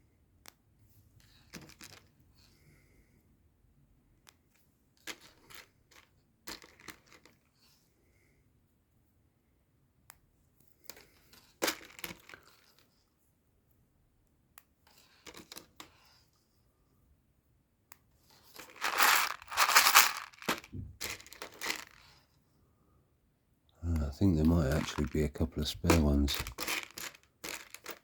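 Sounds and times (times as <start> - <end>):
plastic parts clicking and rattling: 1.5 - 2.1, 5.0 - 7.4, 18.4 - 22.2, 24.0 - 28.0.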